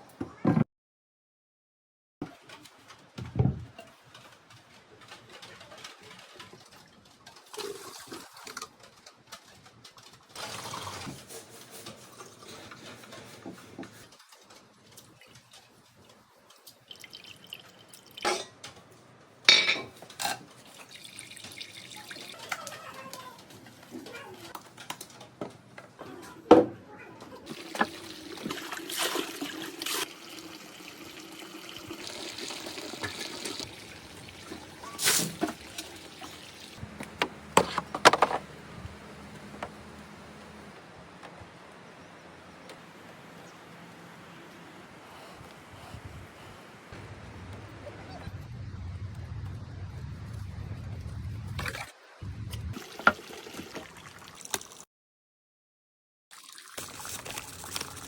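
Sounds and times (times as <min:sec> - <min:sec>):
water splashing and trickling: 0:06.2 - 0:08.9, 0:14.1 - 0:18.3, 0:20.4 - 0:23.4, 0:27.4 - 0:40.7, 0:51.4 - 0:54.9, 0:56.3 - 0:58.0.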